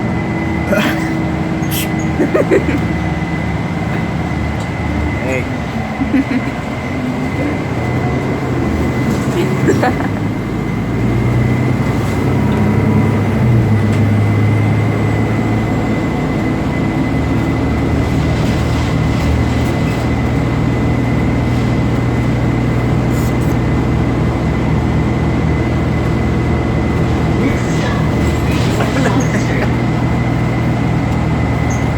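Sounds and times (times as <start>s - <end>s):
vehicle rumble and hum: 0.0s - 31.9s.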